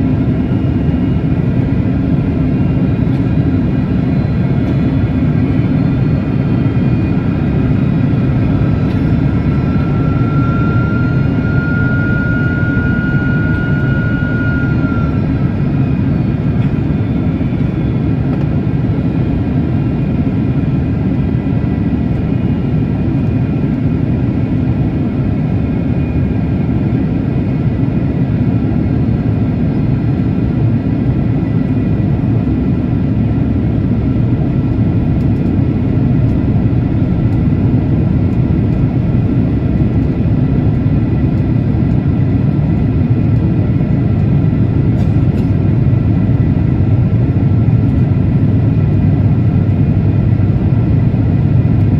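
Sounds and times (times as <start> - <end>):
jet engines roaring: 0.0 - 51.9
faint rising whine: 6.9 - 17.2.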